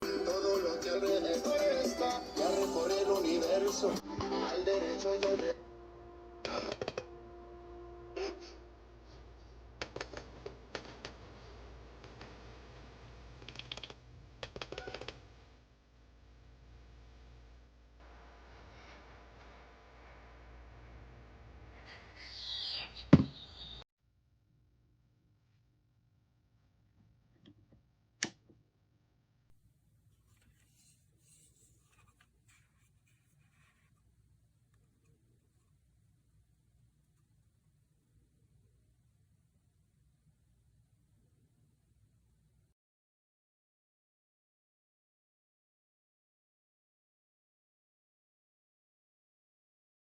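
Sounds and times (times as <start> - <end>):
scratchy rubbing and light clicking: 30.1 - 34.1.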